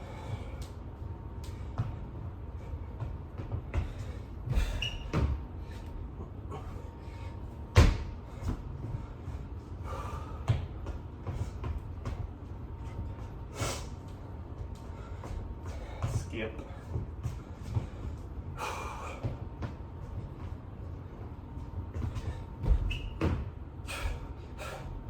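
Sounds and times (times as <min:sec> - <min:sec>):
thuds of hands and feet on floor: 0:02.9 - 0:05.8, 0:07.6 - 0:09.1, 0:09.9 - 0:13.5, 0:14.6 - 0:20.8, 0:21.6 - 0:24.3
hard breathing: 0:05.6 - 0:07.5, 0:08.2 - 0:10.7, 0:14.8 - 0:19.5, 0:23.8 - 0:25.0.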